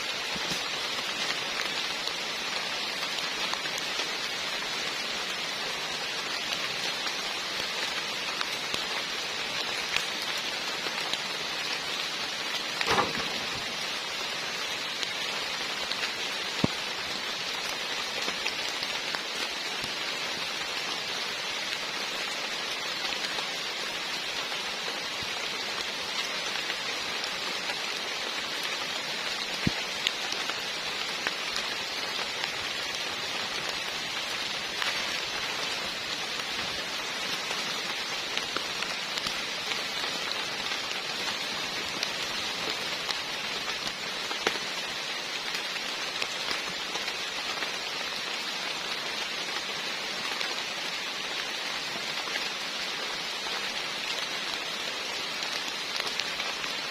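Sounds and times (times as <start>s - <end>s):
heavy rain falling: 0.0s - 56.9s
loud raindrops striking nearby: 0.0s - 56.9s.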